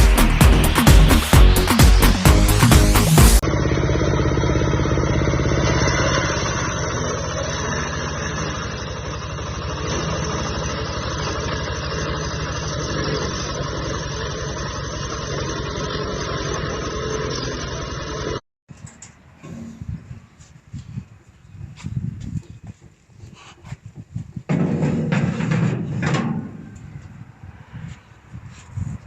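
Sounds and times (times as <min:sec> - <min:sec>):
wood crusher machine droning: 0:00.0 - 0:18.4.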